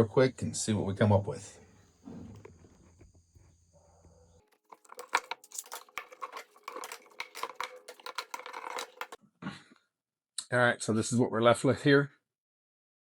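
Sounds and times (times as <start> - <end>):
woodworking clamps clicking and rattling: 4.6 - 9.2.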